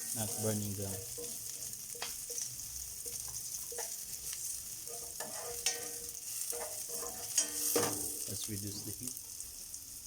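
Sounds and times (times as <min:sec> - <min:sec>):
garlic and onion sizzling in oil: 0:00.0 - 0:10.0
utensil knocking against pan: 0:04.9 - 0:08.1.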